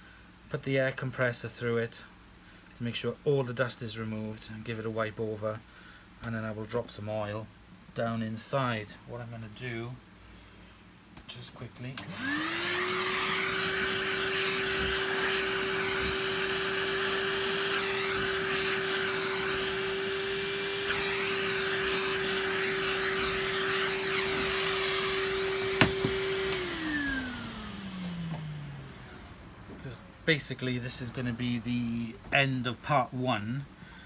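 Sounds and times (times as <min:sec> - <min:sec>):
small electric motor whine: 0:12.0 - 0:29.4.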